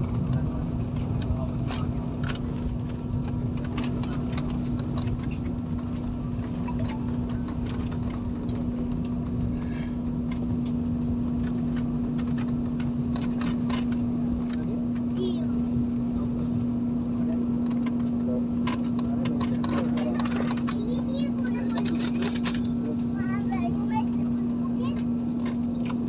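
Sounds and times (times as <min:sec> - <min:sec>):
airliner engine hum: 0:00.0 - 0:26.0.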